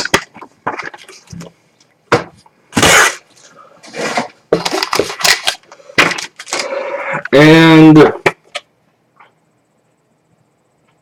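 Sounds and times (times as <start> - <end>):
items knocking and clattering: 0.0 - 3.2, 3.8 - 7.3.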